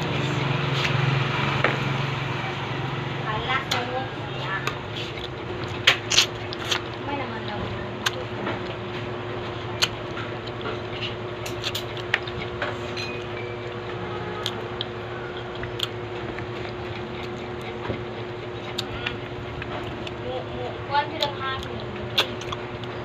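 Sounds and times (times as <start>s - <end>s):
electric fan hum: 0.0s - 23.0s
person chewing: 4.6s - 7.0s, 8.0s - 8.8s, 9.4s - 20.2s, 21.1s - 23.0s.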